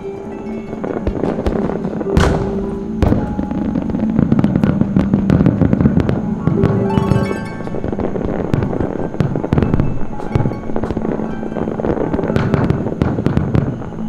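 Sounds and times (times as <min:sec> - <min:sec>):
fireworks crackling: 0:00.0 - 0:14.0
fireworks bangs: 0:00.6 - 0:14.0.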